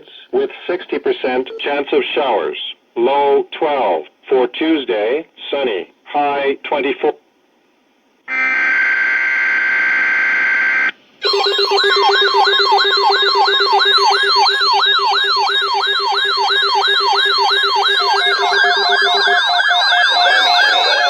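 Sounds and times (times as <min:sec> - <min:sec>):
synthetic alert siren warble: 0:08.3 - 0:21.0
steady data tones: 0:10.7 - 0:21.0.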